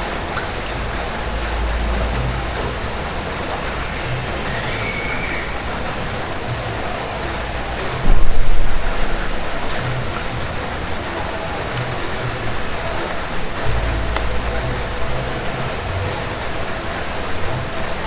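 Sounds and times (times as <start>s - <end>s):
heavy rain pouring: 0.0s - 18.0s
low thunder rumble: 7.3s - 10.6s.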